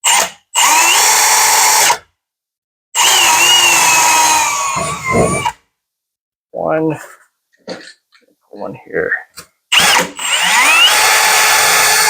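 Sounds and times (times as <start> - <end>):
power drill boring holes: 0.0 - 2.0, 3.0 - 5.6, 9.7 - 12.0.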